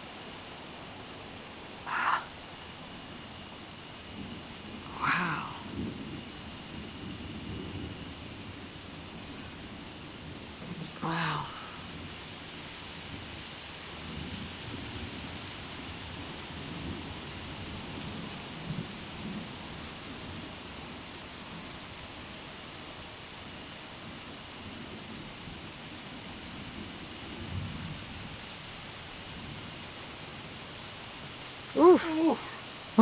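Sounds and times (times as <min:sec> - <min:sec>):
insects trilling: 0:00.1 - 0:33.0.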